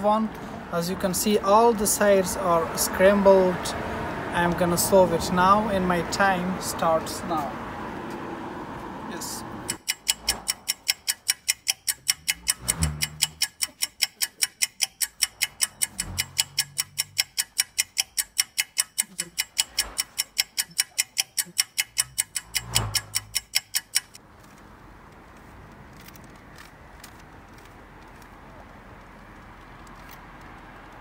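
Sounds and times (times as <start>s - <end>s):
fast clock ticking: 9.6s - 24.2s.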